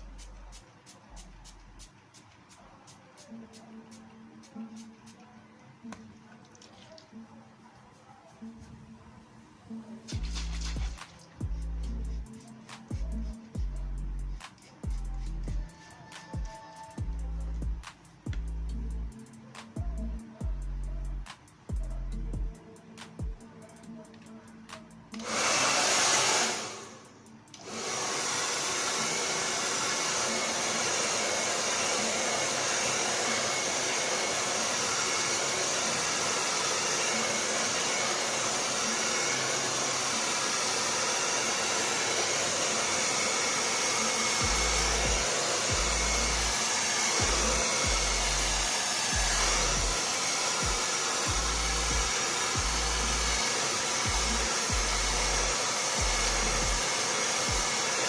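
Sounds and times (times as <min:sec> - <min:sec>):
blow dryer running: 0:25.2 - 0:58.0.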